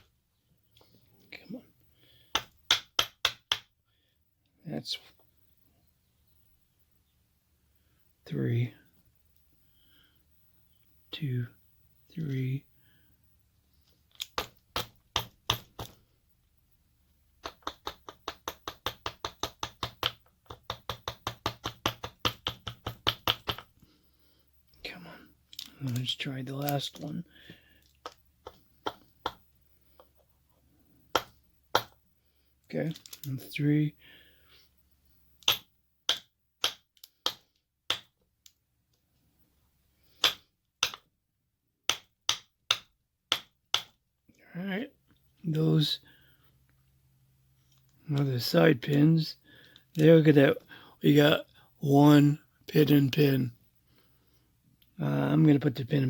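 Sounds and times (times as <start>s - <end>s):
metal lock parts clicking: 14.1s - 14.4s, 25.5s - 27.1s, 32.9s - 33.3s.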